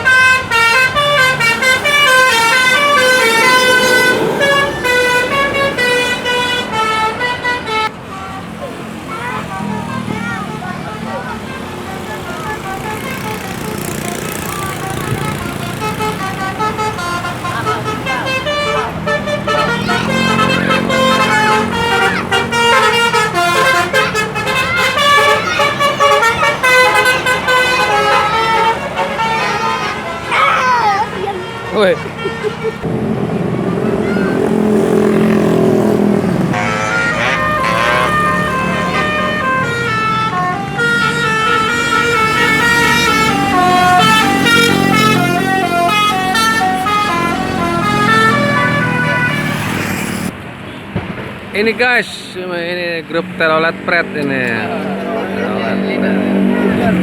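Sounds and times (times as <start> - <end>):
bus horn playing a tune: 0.0 - 33.1, 33.7 - 50.3
bus engine running: 0.0 - 57.0
low engine note: 31.2 - 49.6.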